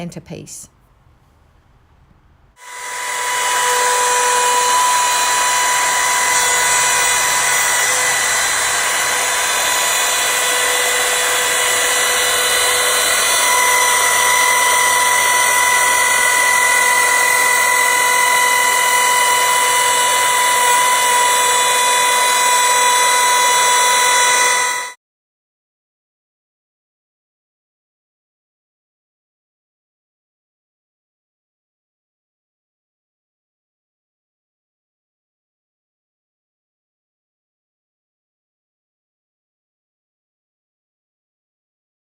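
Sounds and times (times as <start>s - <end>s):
router whining cutting timber: 2.6s - 25.0s.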